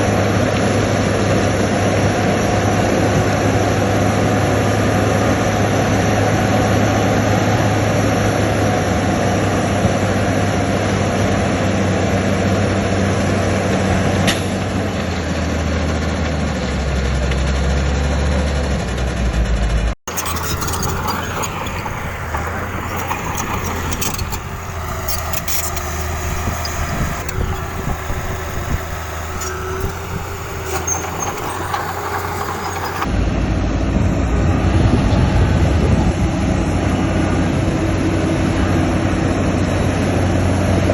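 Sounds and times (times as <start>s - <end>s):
heavy diesel machinery running: 18.5s - 33.4s.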